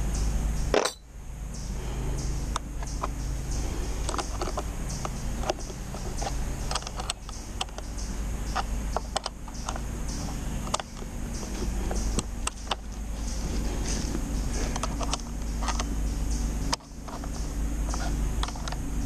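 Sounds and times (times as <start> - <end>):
steady low rumble: 0.0 - 19.0
clicks and clinks on metal parts: 0.7 - 1.0, 4.0 - 7.9.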